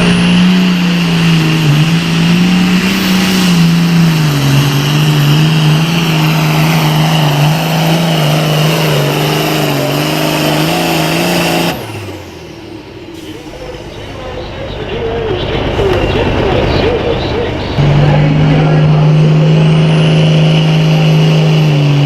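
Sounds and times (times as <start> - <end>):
diesel tractor engine under load: 0.0 - 22.0
high whine: 15.9 - 22.0.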